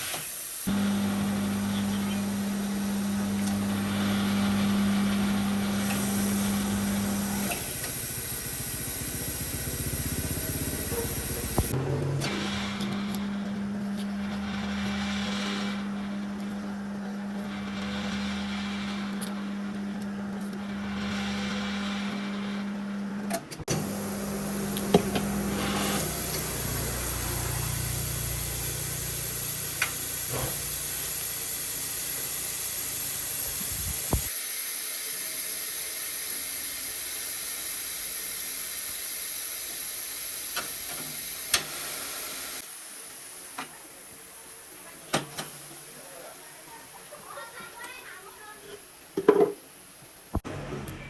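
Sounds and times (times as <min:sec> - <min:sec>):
compressed air hissing: 0:00.0 - 0:00.9, 0:04.9 - 0:11.8, 0:23.8 - 0:43.4.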